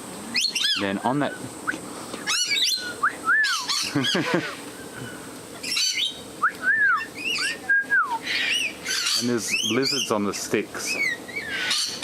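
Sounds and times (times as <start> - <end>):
lorikeets screeching and chattering: 0.3 - 12.0
short whistles rising and falling: 2.4 - 3.8, 6.4 - 8.3.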